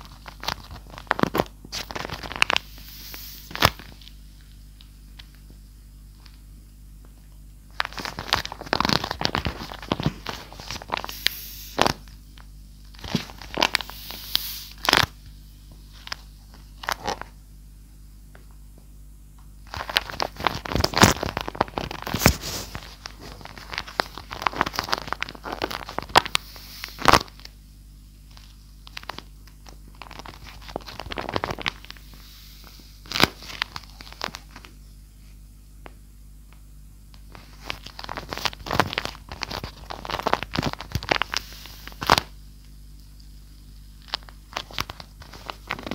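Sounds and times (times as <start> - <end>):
paper squishy crinkling: 0.0 - 4.2, 7.7 - 15.2, 19.6 - 27.5, 28.2 - 34.8, 37.2 - 42.4, 43.0 - 45.9.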